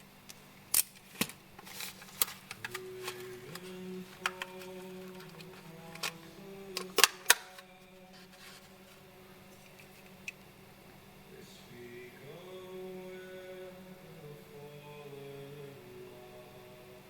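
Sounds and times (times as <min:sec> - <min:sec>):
faint steady hum: 0:00.0 - 0:17.0
packaging clicks and snaps: 0:00.3 - 0:08.7.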